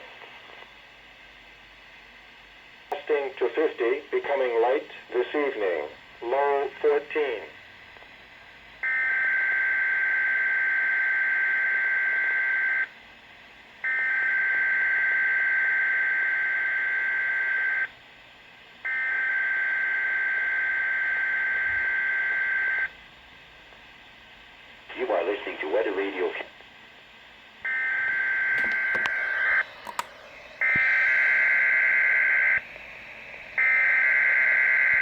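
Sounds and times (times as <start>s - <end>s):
radio hiss: 0.0s - 0.8s, 2.9s - 8.6s, 23.6s - 35.0s.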